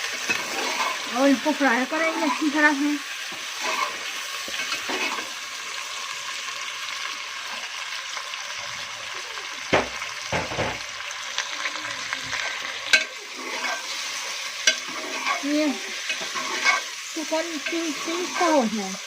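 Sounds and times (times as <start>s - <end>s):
spoon knocking and scraping pan: 0.0s - 1.1s, 1.8s - 5.3s, 9.7s - 11.0s, 12.4s - 18.7s
chicken frying in hot oil: 0.0s - 19.0s.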